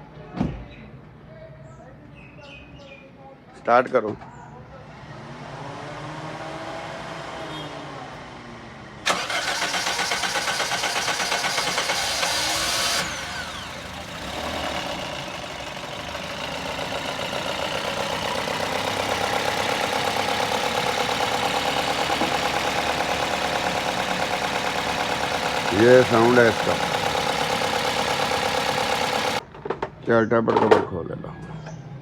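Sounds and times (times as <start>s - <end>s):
car engine starting: 8.0s - 29.4s
engine idling with fast ticking: 9.1s - 29.4s.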